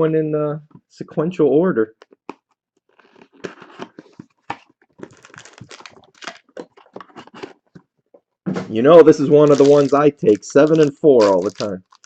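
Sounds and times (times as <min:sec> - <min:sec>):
plastic wrapper crinkling and tearing: 0:02.0 - 0:07.8, 0:09.1 - 0:12.0.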